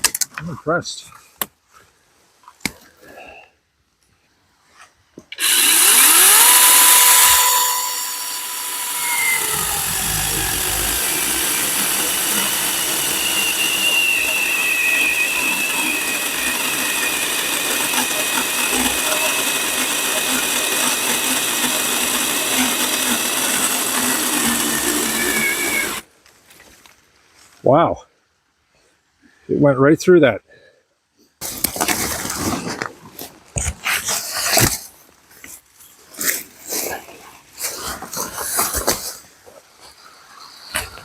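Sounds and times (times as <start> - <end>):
chainsaw chain rasping in wood: 5.4 - 26.0
electric motor whine: 5.4 - 26.0.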